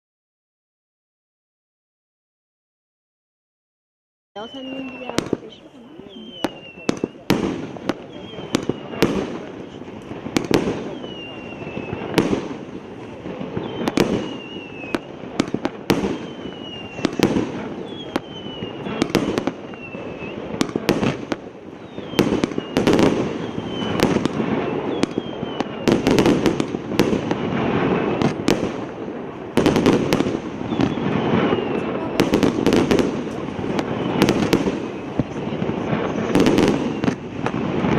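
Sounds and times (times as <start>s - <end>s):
falling whistle: 4.4s - 5.2s, 5.8s - 7.2s, 8.0s - 9.0s, 10.9s - 12.2s, 13.6s - 15.1s, 16.1s - 17.2s, 17.8s - 20.5s, 21.8s - 24.0s, 24.6s - 26.0s, 30.7s - 31.9s
fireworks bangs: 4.4s - 37.9s
rushing crackling noise: 4.4s - 37.9s.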